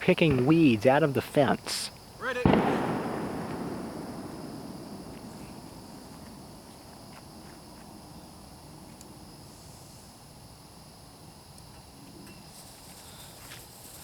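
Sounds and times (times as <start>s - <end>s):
firework pops and crackles: 0.0s - 1.0s, 1.9s - 7.8s
faint high-pitched hiss: 0.0s - 14.0s.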